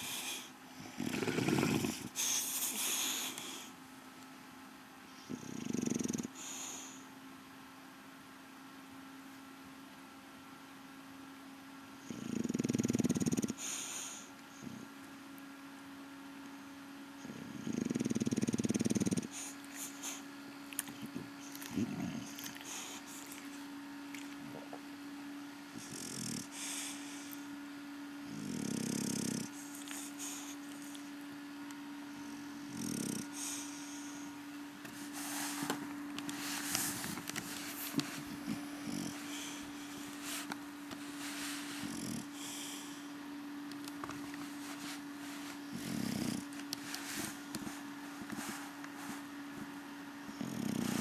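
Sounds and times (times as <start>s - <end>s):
dog snoring: 0.0s - 3.7s, 5.1s - 7.1s, 12.0s - 15.0s, 17.2s - 24.9s, 25.7s - 27.5s, 28.2s - 31.1s, 32.0s - 43.1s, 43.9s - 51.0s
dog snorting: 0.0s - 3.8s, 5.2s - 7.0s, 12.1s - 14.9s, 17.2s - 24.8s, 25.8s - 27.4s, 28.2s - 31.1s, 32.1s - 43.1s, 44.0s - 49.7s, 50.3s - 51.0s.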